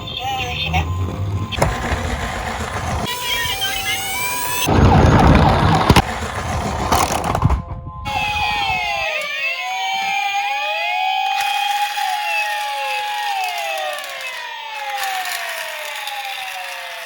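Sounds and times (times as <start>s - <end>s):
toy electronic sirens: 0.0s - 17.0s
rumbling clatter: 0.1s - 3.3s, 4.0s - 8.5s.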